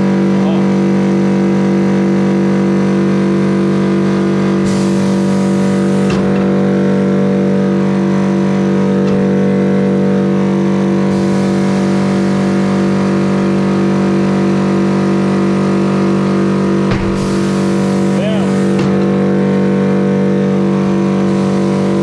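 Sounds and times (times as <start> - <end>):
electric motor humming: 11.1 - 22.0.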